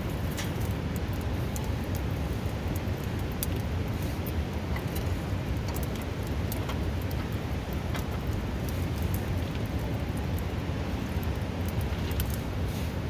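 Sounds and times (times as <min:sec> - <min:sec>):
campfire crackling: 0:00.0 - 0:13.0.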